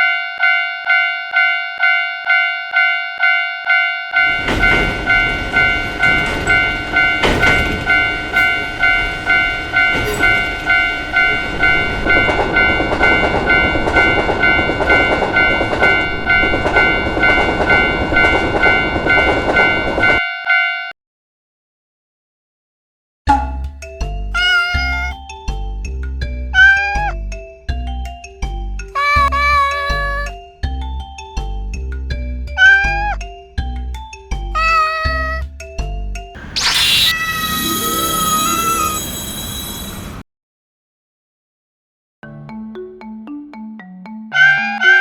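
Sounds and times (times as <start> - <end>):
level crossing bell ringing: 0.0 - 20.9, 29.0 - 30.3, 37.2 - 40.2
train rumble and wheel clatter: 4.2 - 20.2, 37.6 - 40.2.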